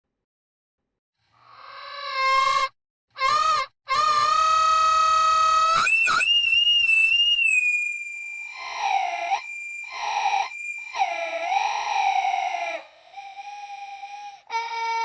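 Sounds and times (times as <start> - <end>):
sobbing cries: 3.2 - 5.8, 8.0 - 15.0
high-pitched wavering wail: 4.2 - 15.0.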